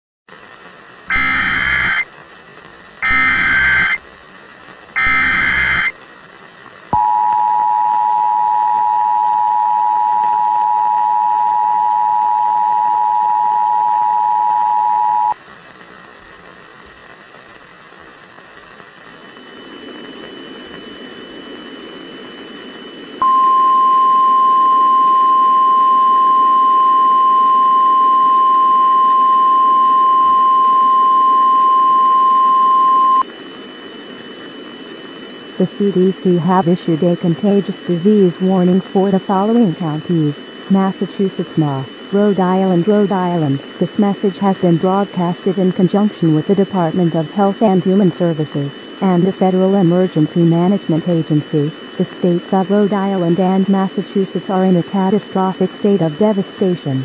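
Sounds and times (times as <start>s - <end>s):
static hiss: 0.3s - 7.0s, 15.2s - 23.2s, 33.2s - 57.0s
harsh data bursts: 1.1s - 2.1s, 3.0s - 4.1s, 5.0s - 6.0s
steady warning tone: 1.1s - 2.1s, 3.0s - 4.0s, 5.0s - 6.0s, 19.4s - 33.2s, 33.8s - 57.0s
two-tone attention signal: 1.1s - 2.1s, 3.0s - 4.0s, 5.0s - 6.0s, 23.2s - 33.2s.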